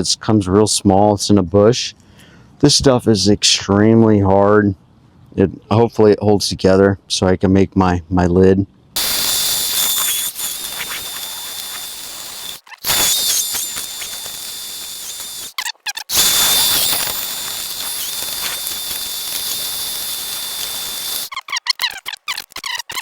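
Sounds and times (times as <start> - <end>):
power tool whining on wood: 9.0 - 21.3.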